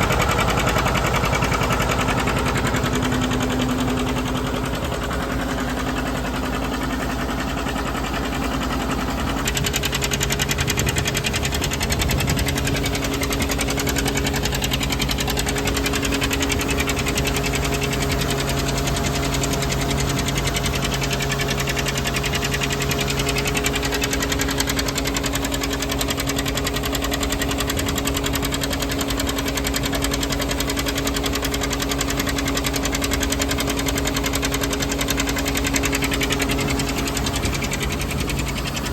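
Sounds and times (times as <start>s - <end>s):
diesel tractor running: 0.0s - 38.9s
feed grinder grinding: 0.0s - 38.9s.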